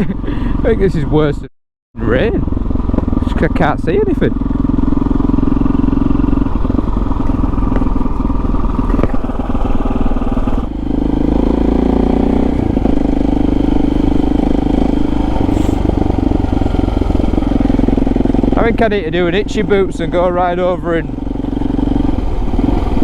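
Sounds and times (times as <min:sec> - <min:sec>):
motorcycle engine running: 0:02.0 - 0:23.0.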